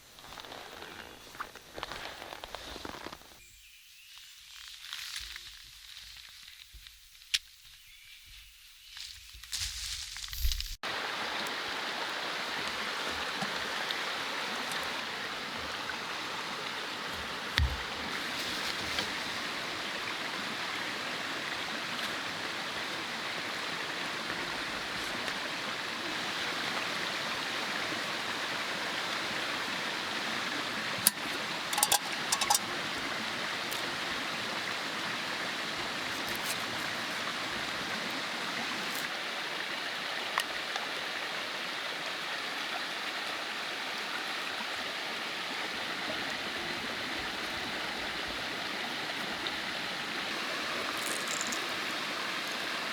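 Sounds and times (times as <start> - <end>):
mountain stream flowing: 10.8 - 52.9.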